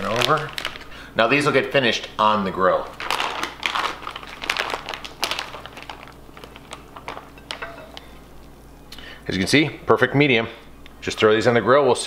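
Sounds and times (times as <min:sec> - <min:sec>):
plastic bag crinkling: 0:00.0 - 0:01.6, 0:02.2 - 0:08.6.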